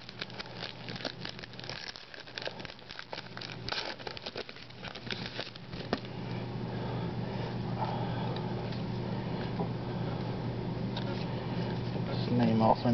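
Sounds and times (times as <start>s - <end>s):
plastic wrapper crinkling and tearing: 0.0s - 6.1s
steady low hum: 0.0s - 12.9s.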